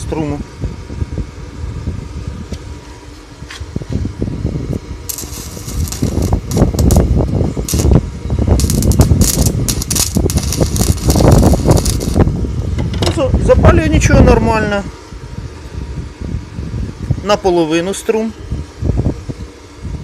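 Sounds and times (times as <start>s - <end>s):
welder low hum: 0.0s - 20.0s
welding arc crackling: 4.7s - 12.9s.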